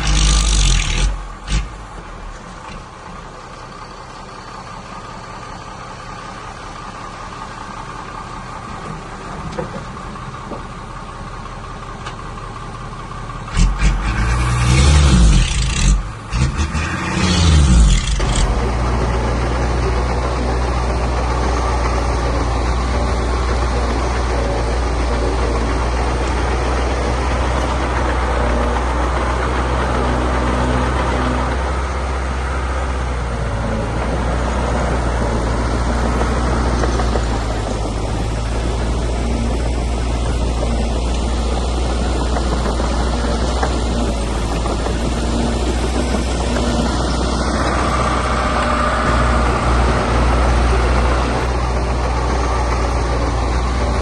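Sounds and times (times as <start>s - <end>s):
engine revving: 0.0s - 2.0s, 13.5s - 54.0s
diesel machinery running: 0.0s - 54.0s.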